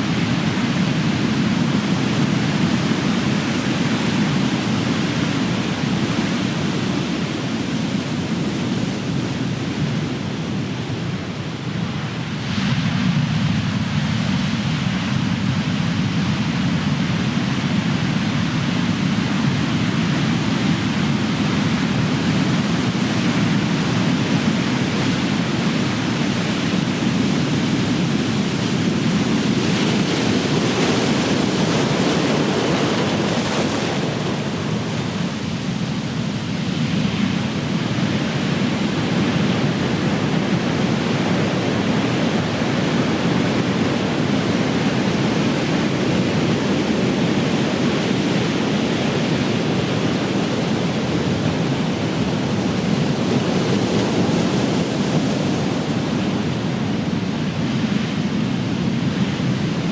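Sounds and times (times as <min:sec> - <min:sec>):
ocean waves crashing: 0:20.7 - 0:59.9.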